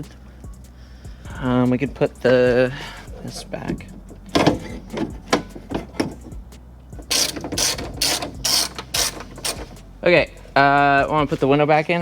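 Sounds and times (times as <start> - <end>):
hand ratchet clicking: 2.4 - 9.9.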